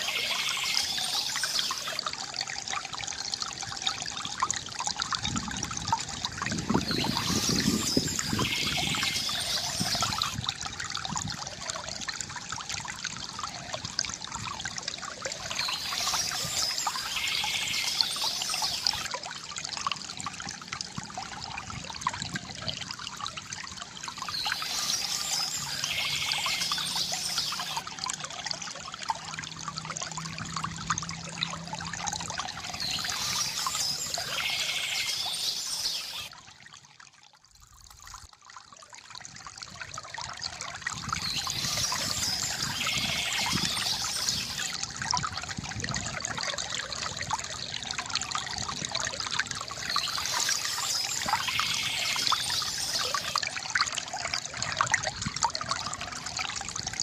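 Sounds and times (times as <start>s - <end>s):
river water gurgling: 0.0s - 57.0s
bird chirping: 24.2s - 27.8s, 32.7s - 36.3s.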